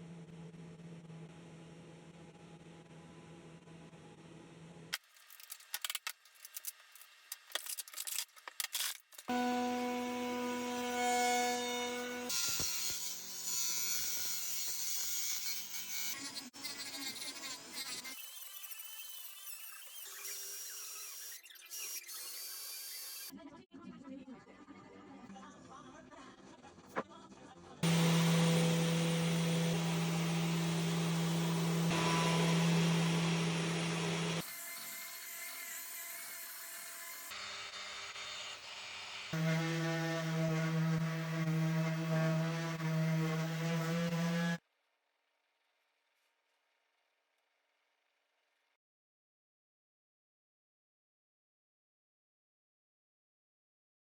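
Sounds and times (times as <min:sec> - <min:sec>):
power tool motor hum: 0:27.8 - 0:35.2.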